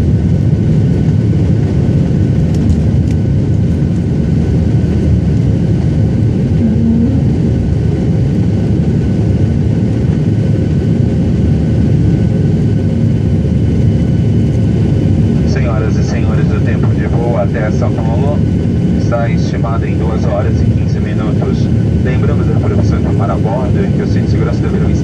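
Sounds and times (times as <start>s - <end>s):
jet engine rumble in cabin: 0.0s - 25.0s.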